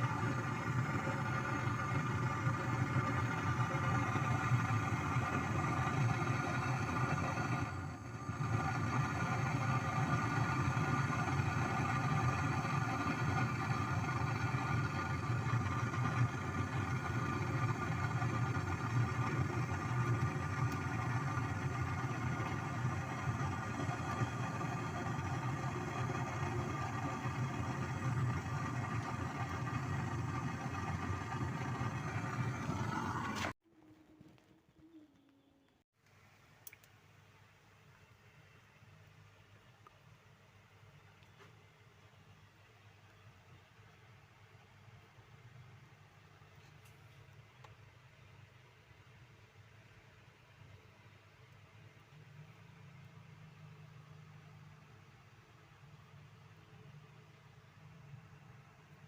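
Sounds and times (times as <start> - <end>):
small motor humming and whining: 0.0 - 33.6.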